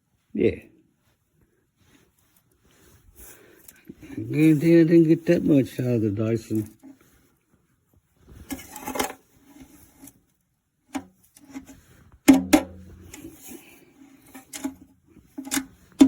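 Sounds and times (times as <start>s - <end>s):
objects knocking and tapping: 10.9s - 13.6s, 14.2s - 16.0s
sharp loud knock: 12.3s - 13.2s.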